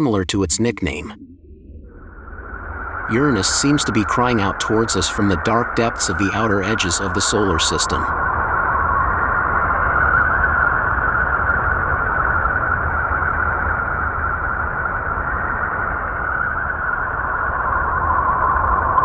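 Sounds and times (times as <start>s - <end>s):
low rumble: 0.0s - 9.9s
steady narrow-band hiss: 2.6s - 8.1s.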